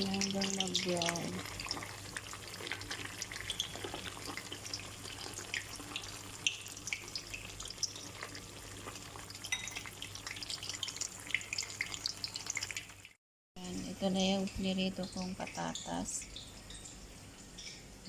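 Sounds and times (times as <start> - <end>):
potatoes frying in hot oil: 0.0 - 13.2.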